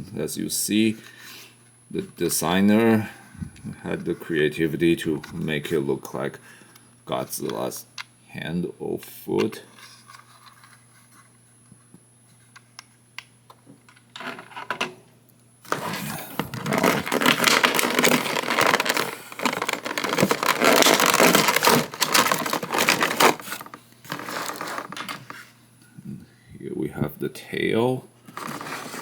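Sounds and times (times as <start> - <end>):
plastic packaging crinkling: 15.6 - 25.4, 28.3 - 29.0
plastic packaging clicks: 15.7 - 25.3.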